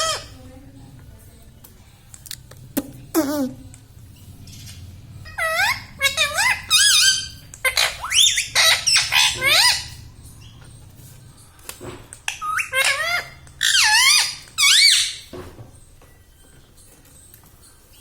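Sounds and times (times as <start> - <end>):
parrot squawking: 0.0 - 0.4, 5.2 - 10.5, 12.3 - 15.3.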